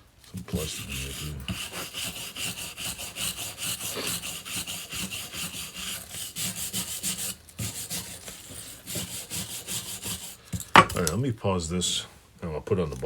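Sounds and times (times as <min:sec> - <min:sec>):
wire brush scrubbing metal: 0:00.4 - 0:10.6.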